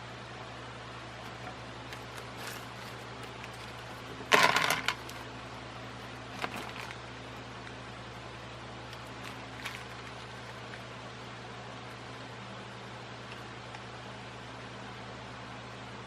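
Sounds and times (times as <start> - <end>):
steady low hum: 0.0 - 16.0
fan parts clattering: 1.2 - 10.9.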